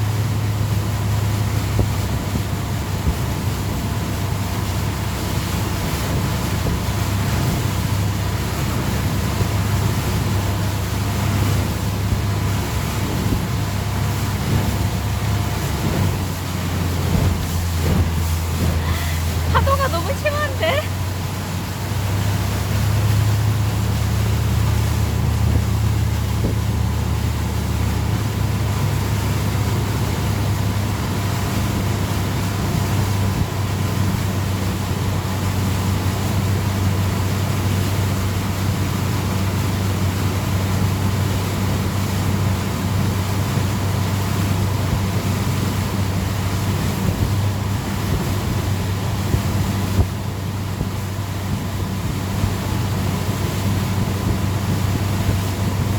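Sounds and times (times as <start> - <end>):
boat motor humming: 0.0 - 55.9
rushing wind: 0.0 - 55.9
water noise: 0.0 - 55.9.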